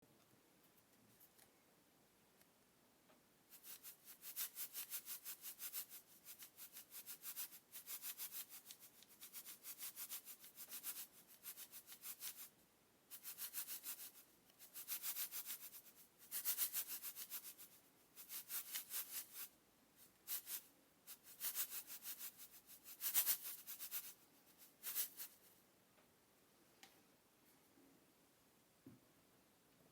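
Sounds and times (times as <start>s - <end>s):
salt grains rattling: 13.1s - 19.5s, 20.3s - 25.4s.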